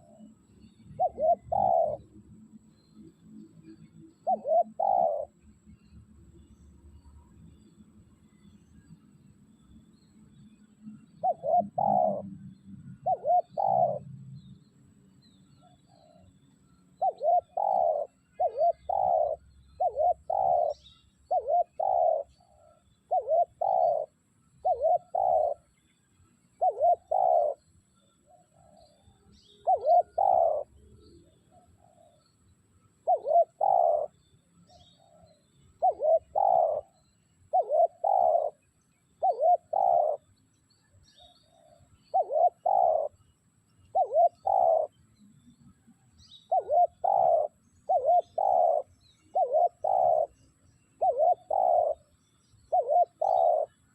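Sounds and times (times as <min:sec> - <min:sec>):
dove cooing: 0:00.0 - 0:02.1, 0:04.2 - 0:05.4, 0:11.2 - 0:14.2, 0:17.0 - 0:25.6, 0:26.6 - 0:27.6, 0:29.6 - 0:30.8, 0:33.0 - 0:34.2, 0:35.8 - 0:40.3, 0:41.5 - 0:43.2, 0:43.9 - 0:45.0, 0:46.4 - 0:50.4, 0:51.0 - 0:52.1, 0:52.7 - 0:53.9.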